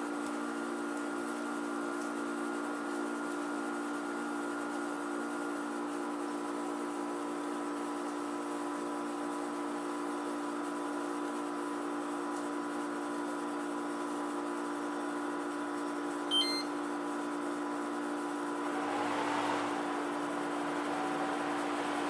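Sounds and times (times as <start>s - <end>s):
short electronic beep: 16.3s - 16.8s.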